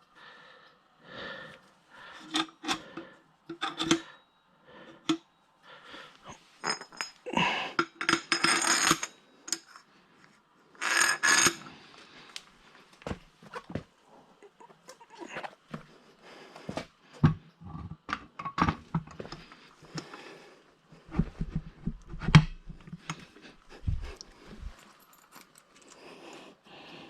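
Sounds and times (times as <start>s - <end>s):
metal parts clinking and scraping: 3.5s - 4.1s, 6.6s - 9.8s, 10.8s - 11.7s, 23.0s - 26.1s.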